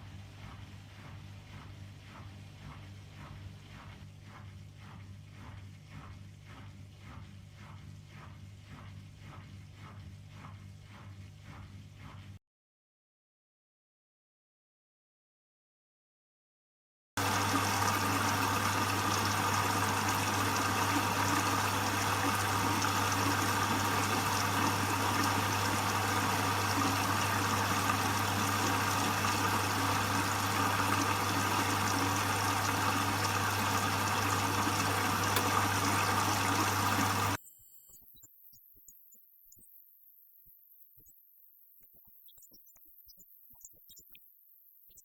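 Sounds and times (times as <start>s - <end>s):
water rushing through washing machine: 17.2s - 37.4s.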